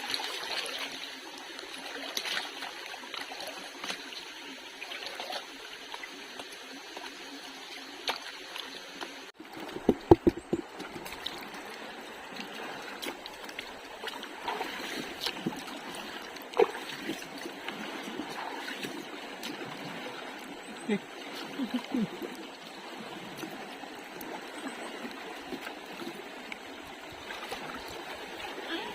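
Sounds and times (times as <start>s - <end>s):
water trickling and splashing: 0.0s - 28.9s.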